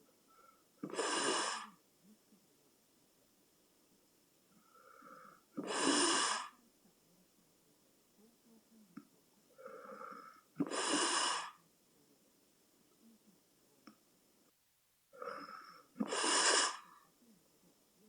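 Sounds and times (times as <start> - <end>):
person snoring: 4.7 - 6.6, 9.6 - 11.6, 15.2 - 17.1.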